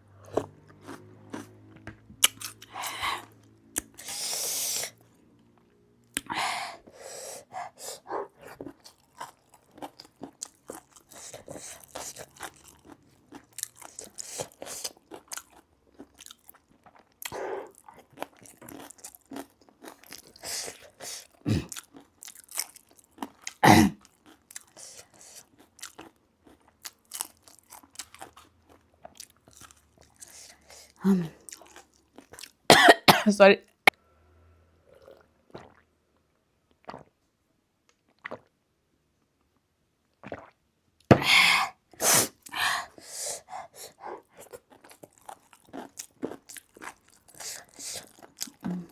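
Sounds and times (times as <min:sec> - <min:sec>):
crunching and chewing food: 0:00.0 - 0:04.1, 0:07.6 - 0:32.7, 0:42.4 - 0:48.9.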